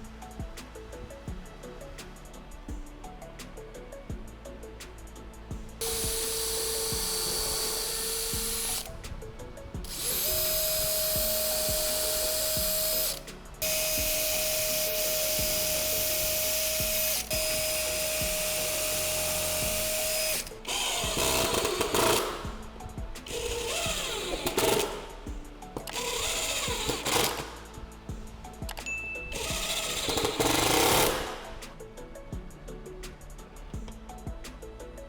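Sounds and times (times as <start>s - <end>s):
electric power tool whine: 5.8s - 27.8s, 28.7s - 31.6s.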